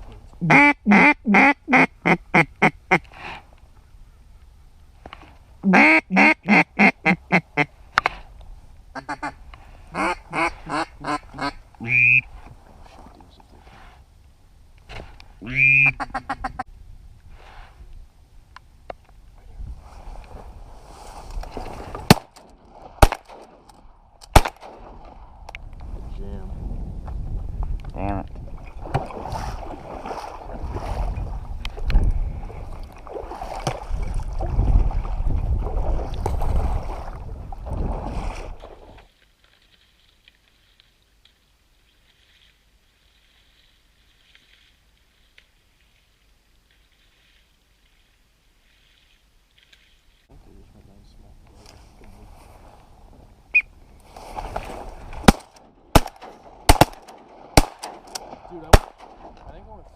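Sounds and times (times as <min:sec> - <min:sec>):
wind rumbling on microphone: 0:08.2 - 0:23.0, 0:24.6 - 0:39.1
water sloshing and splashing: 0:20.0 - 0:23.0, 0:28.4 - 0:41.4, 0:54.1 - 0:55.6, 0:57.2 - 0:59.6
shotgun blasts: 0:22.1 - 0:22.4, 0:23.0 - 0:23.6, 0:24.3 - 0:25.1, 0:55.2 - 0:59.3.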